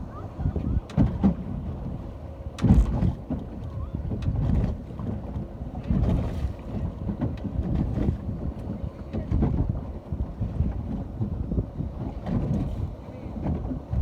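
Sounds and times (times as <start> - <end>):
ocean waves: 0.0 - 10.7
wind buffeting microphone: 0.0 - 14.0.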